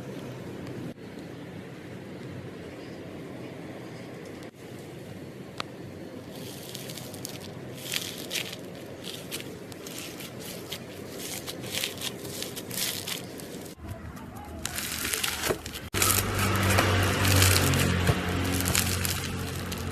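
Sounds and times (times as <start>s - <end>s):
slime crackling and squishing: 6.3s - 19.9s.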